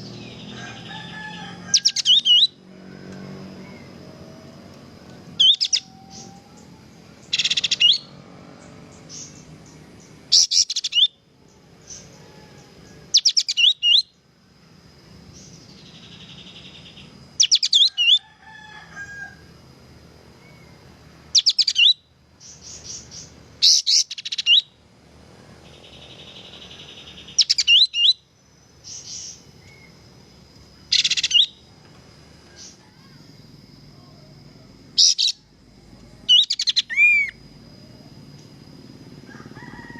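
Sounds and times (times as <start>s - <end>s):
bulbul singing whistled notes: 5.4s - 8.1s, 10.3s - 11.2s, 13.2s - 14.2s, 25.8s - 30.0s, 30.9s - 31.6s, 36.3s - 37.4s.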